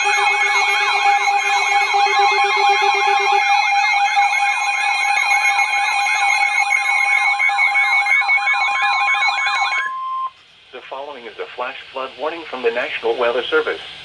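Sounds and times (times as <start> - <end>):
low pulsing beep: 0.0 - 10.4
weather alert radio alarms: 0.0 - 11.0.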